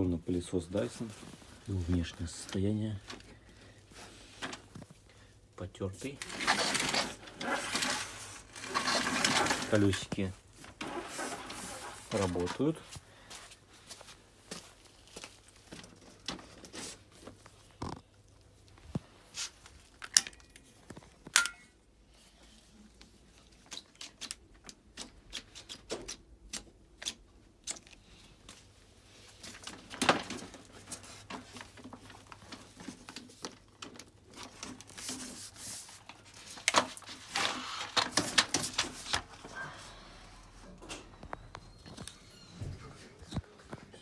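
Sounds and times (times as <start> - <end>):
vacuum cleaner parts clicking and rattling: 0.8 - 5.1, 6.0 - 13.0, 15.2 - 18.0, 18.9 - 21.6, 29.3 - 39.6.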